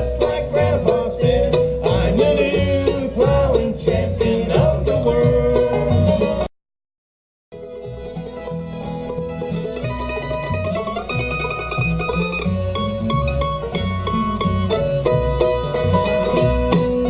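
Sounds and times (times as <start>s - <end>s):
banjo picking: 0.0s - 6.5s, 7.6s - 17.0s
bass line: 0.0s - 6.5s, 7.6s - 17.0s
bluegrass band playing: 0.0s - 6.5s, 7.6s - 17.0s
guitar picking: 7.6s - 17.0s.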